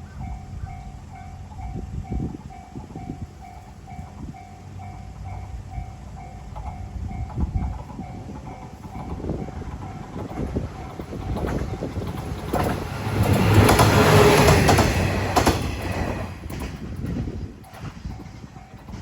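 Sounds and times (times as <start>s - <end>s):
train engine and wheel rumble: 0.0s - 19.0s
wheels knocking over rails: 8.7s - 19.0s.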